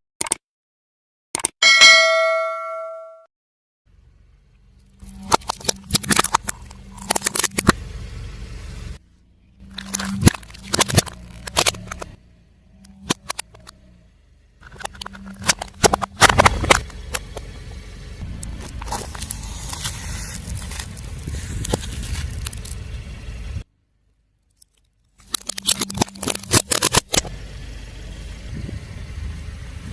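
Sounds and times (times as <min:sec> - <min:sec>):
car engine hum: 0:03.9 - 0:29.9
tyre crushing crunchy objects: 0:18.4 - 0:22.8.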